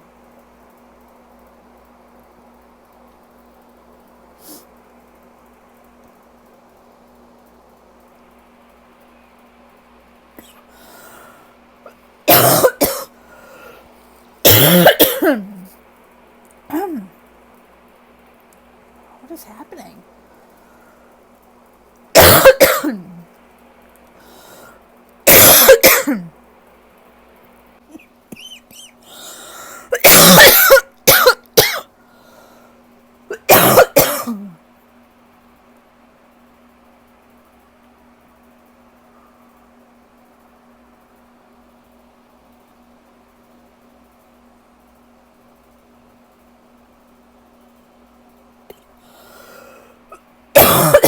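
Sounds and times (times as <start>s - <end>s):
faint breath: 10.6s - 11.6s, 13.2s - 14.2s, 20.5s - 21.2s, 24.2s - 24.9s, 29.0s - 29.9s, 32.0s - 32.8s, 49.0s - 50.1s
person coughing: 12.3s - 13.8s, 14.4s - 15.8s, 16.7s - 17.1s, 22.2s - 23.3s, 25.3s - 26.3s, 27.9s - 31.9s, 33.3s - 34.6s, 49.4s - 51.0s.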